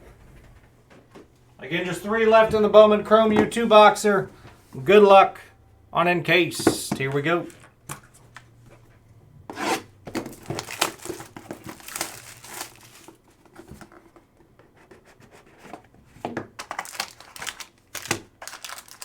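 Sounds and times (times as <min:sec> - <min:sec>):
plastic wrapping crinkling and tearing: 0:10.2 - 0:13.3, 0:16.6 - 0:19.0.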